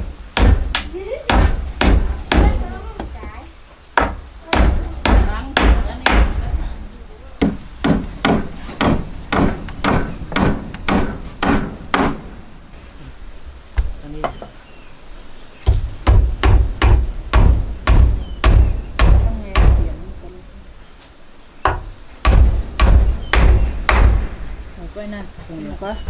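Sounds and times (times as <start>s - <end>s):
hammer blows on wood: 0.0s - 3.1s, 4.0s - 6.6s, 7.4s - 12.5s, 15.6s - 20.1s, 21.6s - 24.6s.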